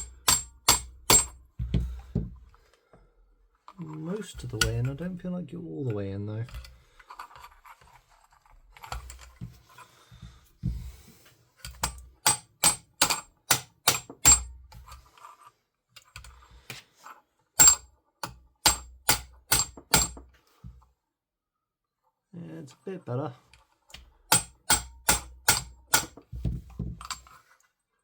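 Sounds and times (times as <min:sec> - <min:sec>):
rubber mallet tapping metal: 0:00.0 - 0:01.4, 0:24.3 - 0:26.1.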